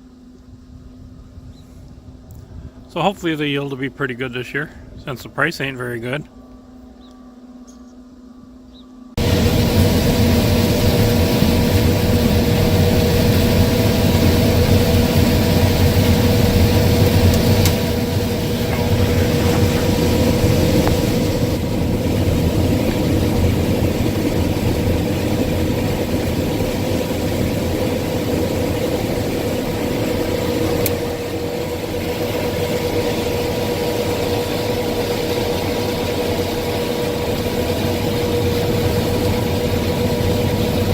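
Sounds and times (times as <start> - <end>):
combine harvester drone: 0.0 - 40.9.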